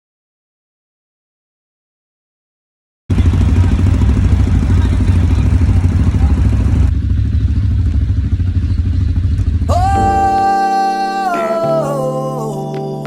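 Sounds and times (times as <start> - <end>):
low rumbling with flutter: 3.1 - 10.0
music with held high note: 9.7 - 13.0.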